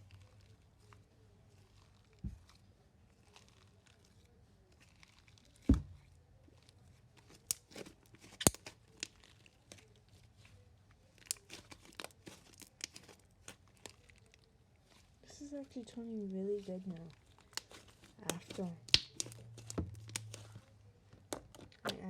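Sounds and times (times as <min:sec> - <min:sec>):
slime stretched and squeezed by hand: 0:00.0 - 0:10.5, 0:11.1 - 0:15.2, 0:17.1 - 0:22.0
dull thump: 0:05.7 - 0:06.0
sticky clicks and pops of slime: 0:17.5 - 0:20.4.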